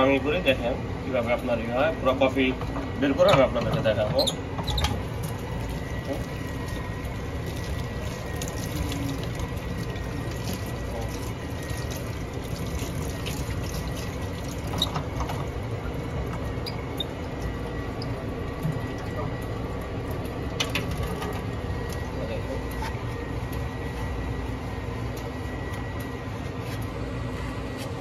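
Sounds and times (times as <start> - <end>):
tap water running: 4.6 - 21.9.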